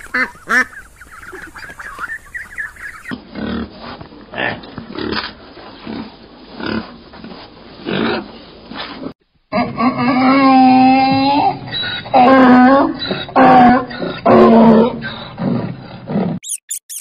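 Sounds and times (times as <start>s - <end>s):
young animals squeaking: 0.0s - 3.2s, 10.9s - 15.4s, 16.4s - 17.0s
pig grunting: 3.1s - 7.0s, 7.8s - 8.3s, 8.9s - 16.4s.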